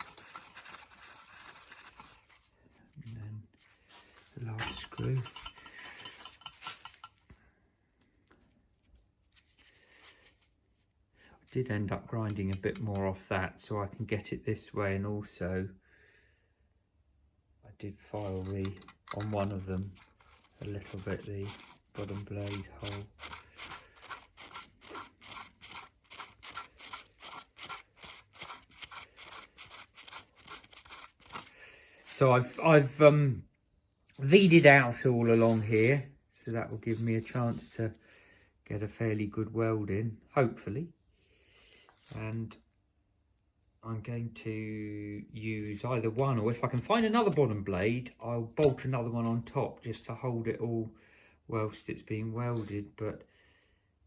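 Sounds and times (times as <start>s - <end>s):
metal parts clinking and scraping: 4.5s - 7.3s, 18.2s - 31.5s.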